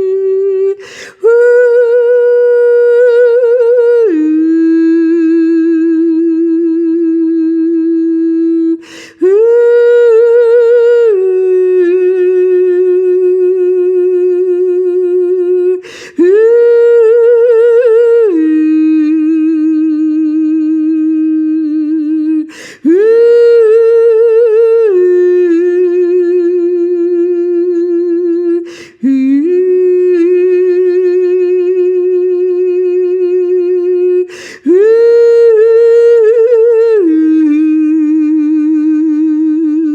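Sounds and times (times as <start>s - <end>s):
short breaths: 0.8s - 1.2s, 8.8s - 9.2s, 15.8s - 16.2s, 22.5s - 22.8s, 28.7s - 29.0s, 34.3s - 34.7s.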